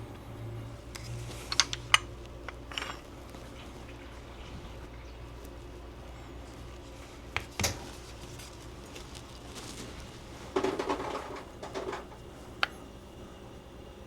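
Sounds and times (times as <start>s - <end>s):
rattling knocks of handling: 10.6s - 12.3s.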